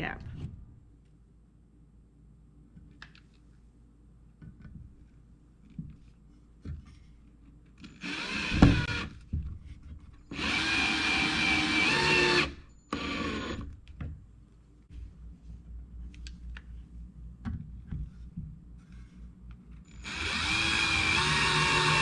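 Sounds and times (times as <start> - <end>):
faint handling knocks and clicks: 4.3 - 7.9, 17.4 - 19.9
power drill whining: 8.0 - 9.1, 10.3 - 13.7, 19.9 - 22.0.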